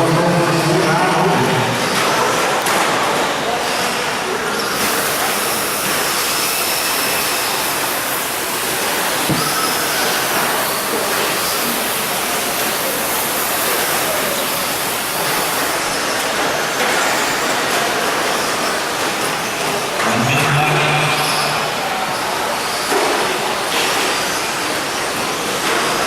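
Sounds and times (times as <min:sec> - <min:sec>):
faint high whines: 0:20.0 - 0:22.8.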